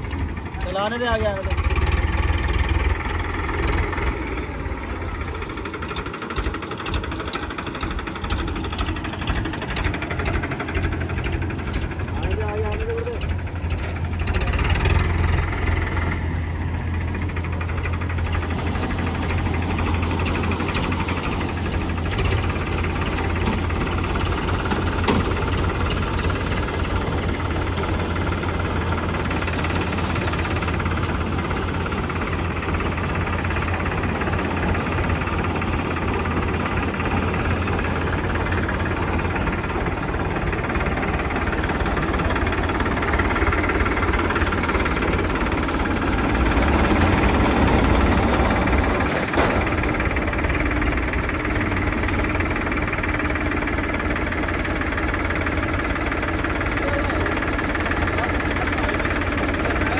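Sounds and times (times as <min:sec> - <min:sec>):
combine harvester engine hum: 0:00.0 - 0:59.9
mechanical clatter: 0:42.0 - 0:53.0.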